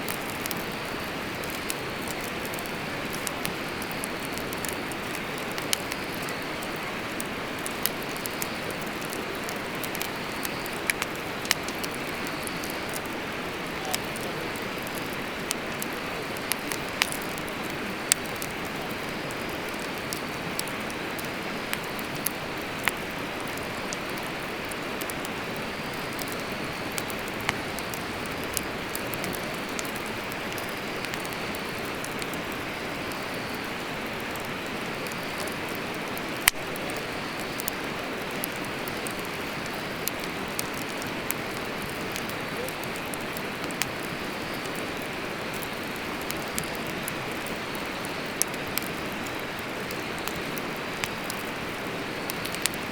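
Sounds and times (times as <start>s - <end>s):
fire crackles and pops: 0.0s - 52.9s
wood fire hissing: 0.0s - 52.9s.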